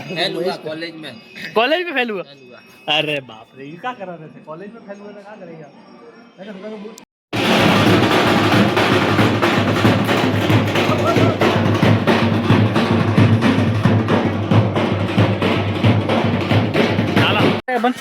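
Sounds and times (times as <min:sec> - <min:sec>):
loud drum and percussion music: 0:07.3 - 0:18.0.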